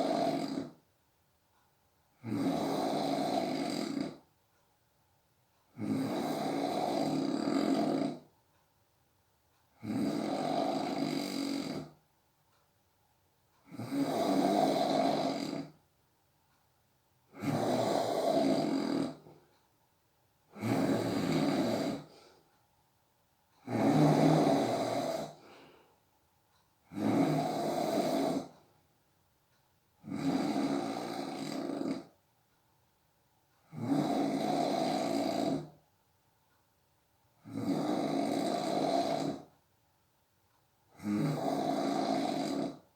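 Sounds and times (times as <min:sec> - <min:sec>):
person snoring: 0:00.0 - 0:00.8, 0:02.2 - 0:04.2, 0:05.8 - 0:08.3, 0:09.8 - 0:12.0, 0:13.6 - 0:15.8, 0:17.3 - 0:19.4, 0:20.5 - 0:22.4, 0:23.6 - 0:25.8, 0:26.8 - 0:28.7, 0:30.0 - 0:32.2, 0:33.7 - 0:35.8, 0:37.4 - 0:39.5, 0:41.0 - 0:42.9.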